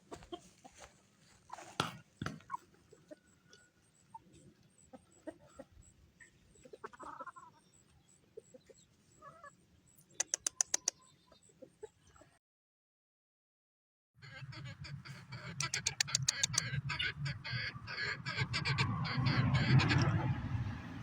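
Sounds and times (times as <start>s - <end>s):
chickens clucking: 0.0s - 12.4s, 14.2s - 20.4s
sharp clicks: 10.0s - 11.0s, 15.6s - 16.7s.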